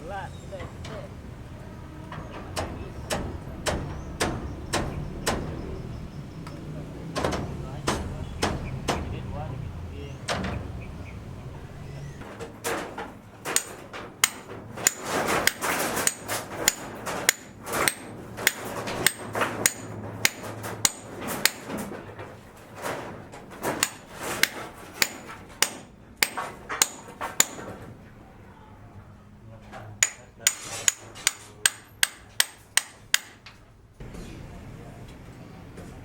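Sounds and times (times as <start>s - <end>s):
hammer blows ringing on metal: 2.0s - 5.9s, 13.5s - 21.8s, 23.8s - 27.8s, 30.0s - 33.4s.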